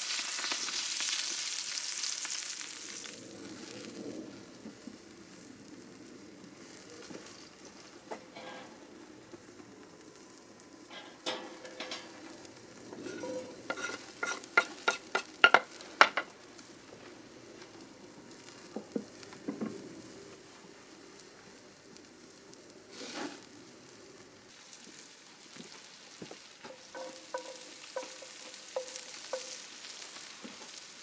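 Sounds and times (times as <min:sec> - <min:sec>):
food sizzling in a pan: 0:00.0 - 0:31.0
utensil stirring in a pan: 0:13.0 - 0:16.3, 0:26.6 - 0:31.0
sharp knocks against a pan: 0:13.1 - 0:16.3, 0:26.7 - 0:29.6.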